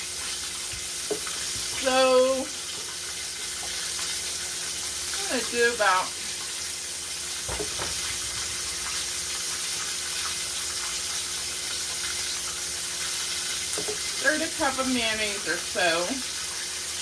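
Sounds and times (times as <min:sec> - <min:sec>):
chicken sizzling in hot oil: 0:00.0 - 0:17.0.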